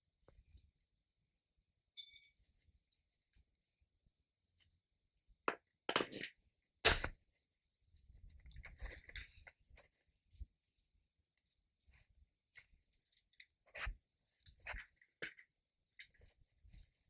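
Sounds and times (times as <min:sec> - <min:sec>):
short metallic clink: 0:02.0 - 0:02.4.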